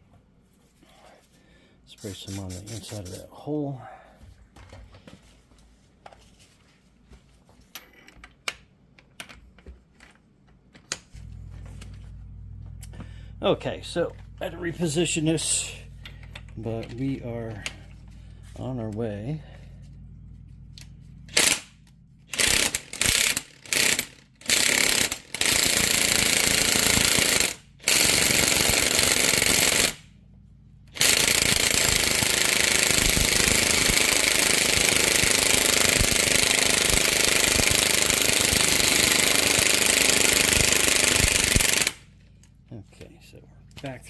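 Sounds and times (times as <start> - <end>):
impact gun hammering: 31.0 - 42.0.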